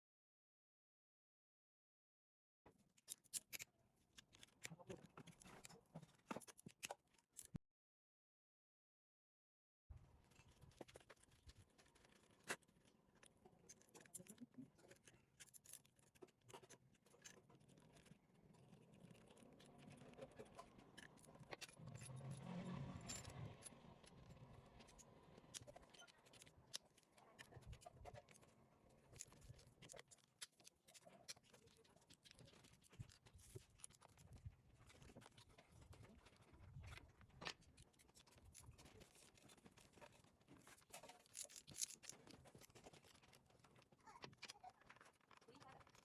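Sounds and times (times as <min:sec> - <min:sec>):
small metal parts clicking: 0:38.0 - 0:46.0.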